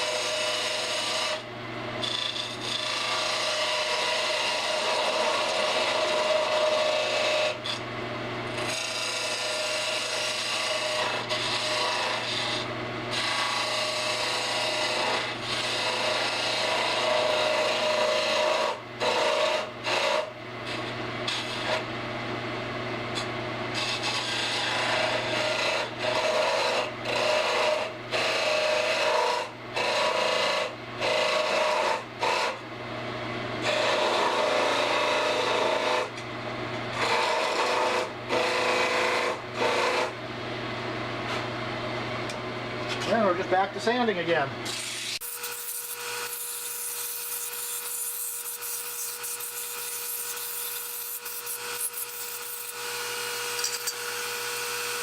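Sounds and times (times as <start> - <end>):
tool cutting spinning wood: 0.0 - 7.8, 8.5 - 21.9, 23.2 - 32.6, 33.6 - 36.2, 36.9 - 40.2, 43.0 - 55.0
wood lathe motor hum: 0.0 - 7.8, 8.5 - 21.9, 23.7 - 32.6, 33.6 - 36.2, 36.9 - 40.2, 44.7 - 55.0.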